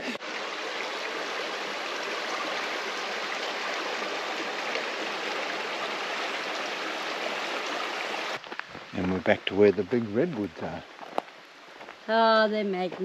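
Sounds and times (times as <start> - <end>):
creek water running: 0.0 - 13.0.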